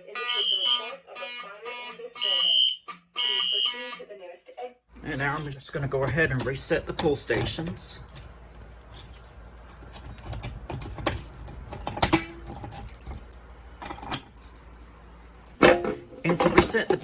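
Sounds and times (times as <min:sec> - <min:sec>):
keys jangling: 0:05.0 - 0:15.7.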